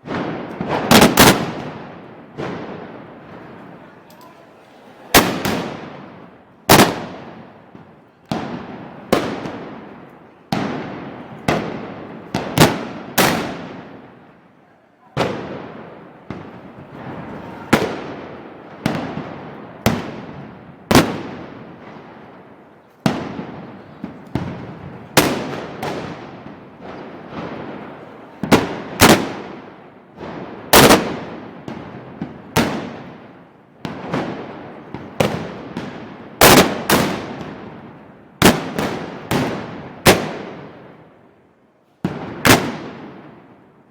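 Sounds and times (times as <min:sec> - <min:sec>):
blank gunshots echoing: 0:00.0 - 0:03.7, 0:05.2 - 0:07.2.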